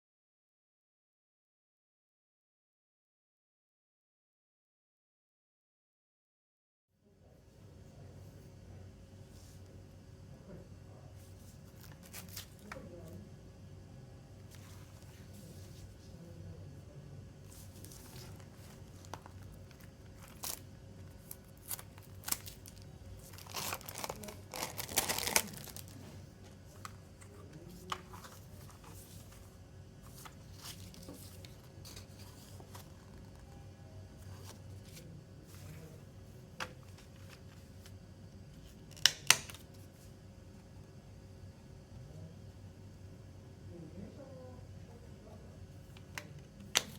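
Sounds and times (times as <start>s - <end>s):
packaging tearing and crinkling: 19.3s - 26.0s.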